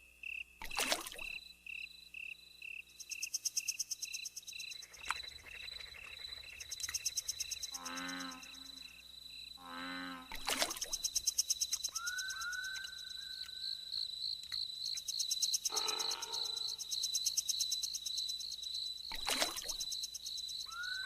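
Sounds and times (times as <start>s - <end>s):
insects chirping: 0.0s - 21.0s
short animal calls: 15.7s - 16.7s.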